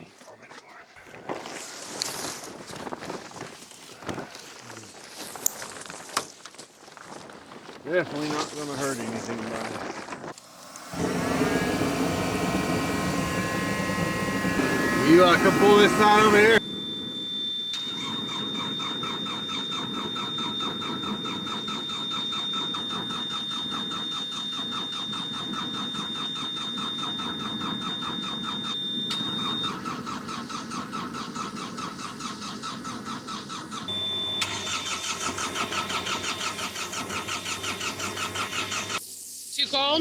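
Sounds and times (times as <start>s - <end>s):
diesel engine cranking: 7.9s - 39.0s
steady high-pitched beep: 14.5s - 29.8s.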